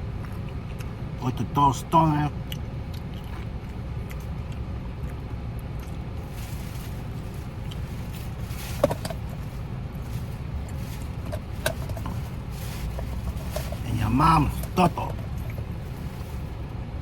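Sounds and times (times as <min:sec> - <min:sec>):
person chewing crunchy food: 0:00.0 - 0:01.0, 0:02.4 - 0:13.8
low outdoor rumble: 0:00.0 - 0:17.0.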